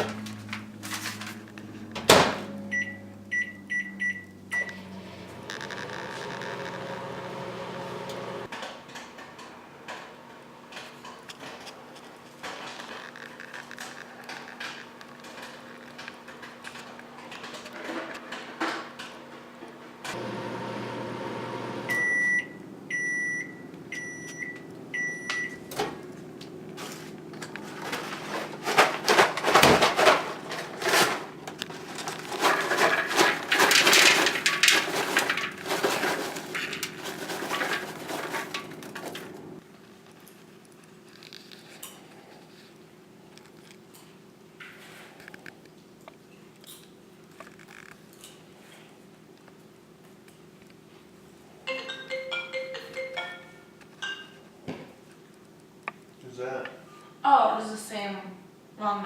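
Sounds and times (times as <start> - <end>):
microwave oven humming: 0.0 - 8.5, 20.1 - 29.6, 34.6 - 39.6
popcorn popping: 27.4 - 39.7.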